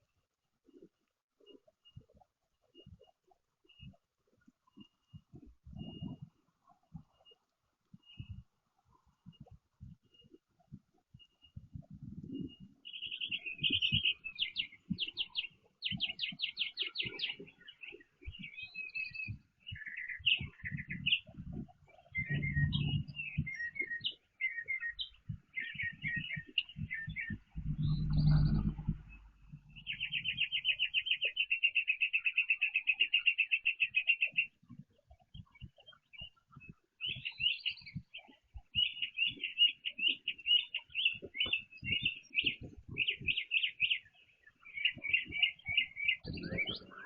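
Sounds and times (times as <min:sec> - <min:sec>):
songbirds chirping and calling: 0:00.7 - 0:47.0
thumps and rustling on microphone: 0:10.7 - 0:12.8, 0:19.2 - 0:23.9, 0:25.0 - 0:30.5, 0:41.0 - 0:44.0
rapid bird trill: 0:22.1 - 0:34.6.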